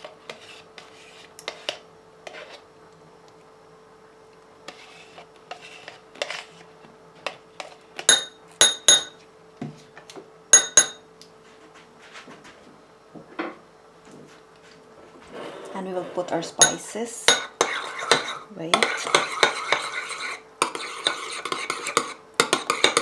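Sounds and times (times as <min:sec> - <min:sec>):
metal spoon clinking on a bowl: 0:08.1 - 0:09.2, 0:10.6 - 0:11.0, 0:16.6 - 0:23.0.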